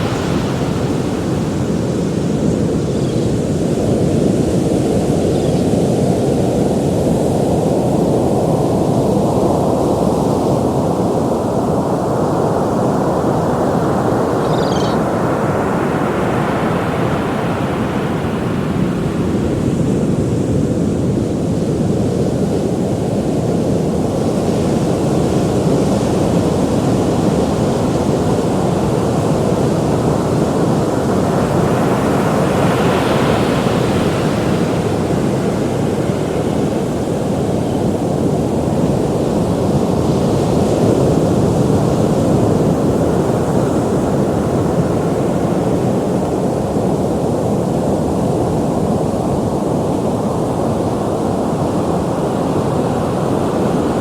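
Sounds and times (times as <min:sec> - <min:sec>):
ocean waves breaking: 0:00.0 - 0:02.9, 0:28.1 - 0:40.6.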